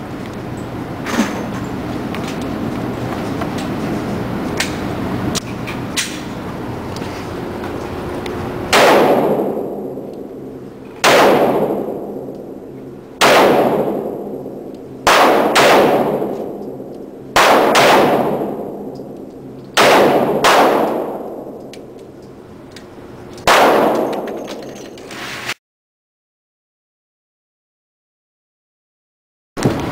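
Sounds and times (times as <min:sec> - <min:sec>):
gunshots with echoes: 0:08.7 - 0:10.1, 0:11.0 - 0:12.3, 0:13.2 - 0:19.0, 0:19.8 - 0:21.6, 0:23.5 - 0:24.5.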